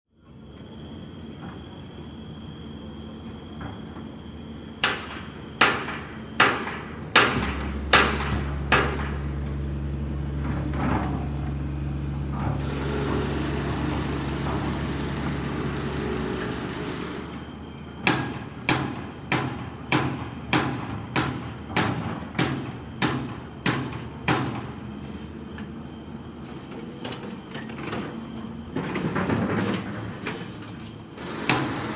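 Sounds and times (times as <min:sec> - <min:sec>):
hammer blows: 0:04.8 - 0:09.4, 0:18.0 - 0:24.7
machine motor humming: 0:11.2 - 0:17.5.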